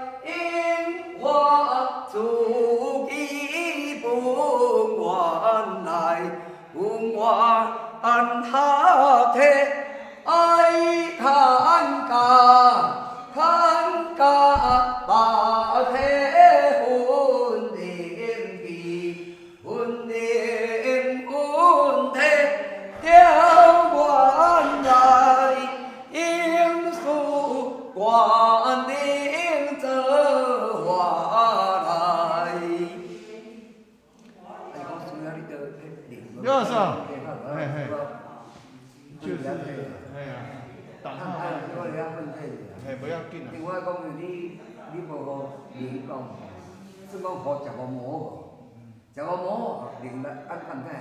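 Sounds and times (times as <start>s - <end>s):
singer breathing: 9.8s - 10.3s, 19.2s - 19.6s
woman singing unaccompanied: 10.3s - 33.6s.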